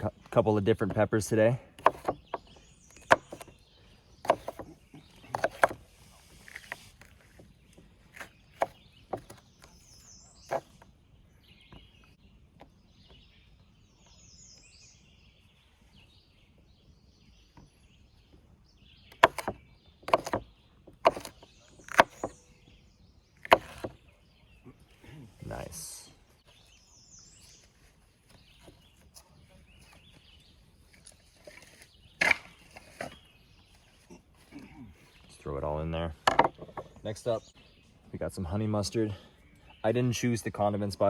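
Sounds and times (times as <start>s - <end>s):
bird chirping: 0.0s - 41.0s
knife chopping on cutting board: 1.8s - 2.2s, 4.2s - 4.6s, 5.3s - 5.8s, 19.2s - 19.5s, 20.1s - 20.4s, 21.0s - 21.3s, 23.5s - 23.9s.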